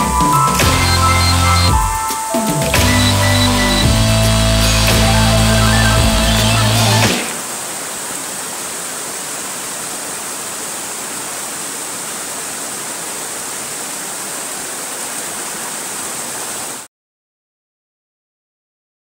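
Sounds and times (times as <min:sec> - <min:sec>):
waterfall rushing: 0:00.0 - 0:16.9.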